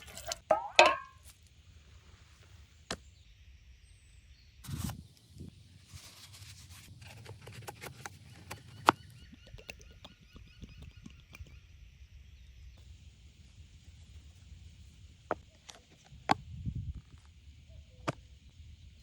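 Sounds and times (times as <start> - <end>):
scraping clang: 0.0 - 1.2.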